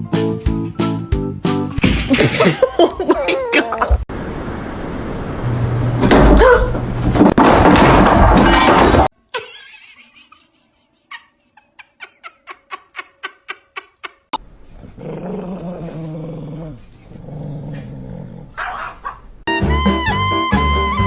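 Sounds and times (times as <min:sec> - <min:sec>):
dog growling: 0:14.8 - 0:19.2.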